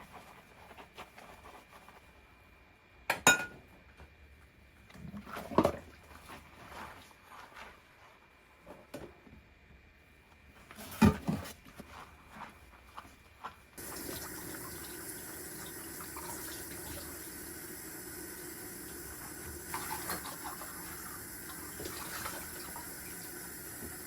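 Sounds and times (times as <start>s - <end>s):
tap water running into sink: 13.8s - 24.0s.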